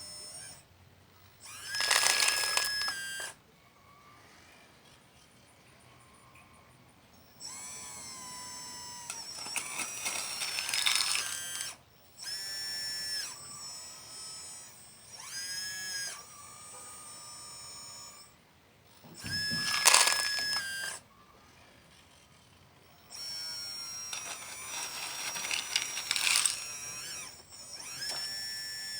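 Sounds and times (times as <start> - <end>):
electric motors and hydraulic pump whining: 0.0 - 5.3, 5.9 - 28.9.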